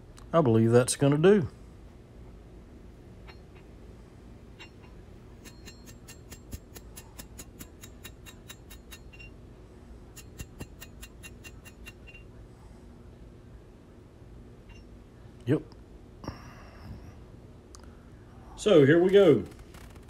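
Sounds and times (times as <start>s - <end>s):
rapid metallic ticking: 4.6s - 9.3s, 10.1s - 12.2s.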